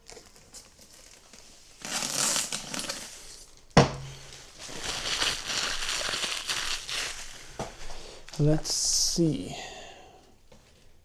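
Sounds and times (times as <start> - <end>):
plastic film peeled and crinkled: 0.0 - 8.5.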